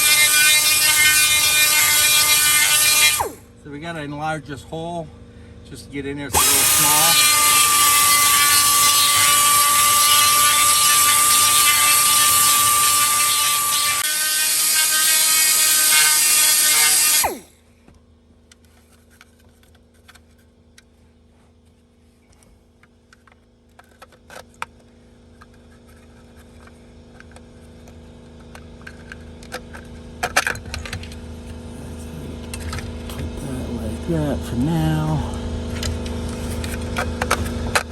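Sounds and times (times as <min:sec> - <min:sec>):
power tool drilling plastic: 0:00.0 - 0:03.4, 0:06.4 - 0:17.5.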